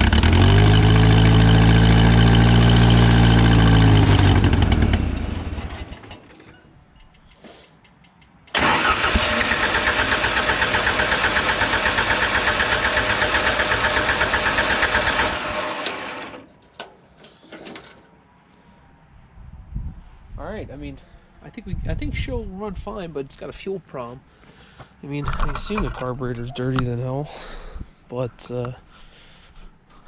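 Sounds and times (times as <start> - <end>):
engine running down and stopping: 0.0 - 6.2, 8.6 - 16.4
engine turning over pulsing: 0.0 - 6.2, 8.5 - 16.4.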